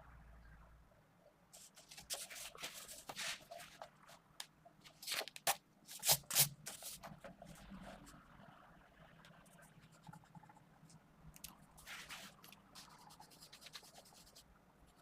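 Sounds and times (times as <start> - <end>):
pencil sketching on paper: 11.8 - 15.0.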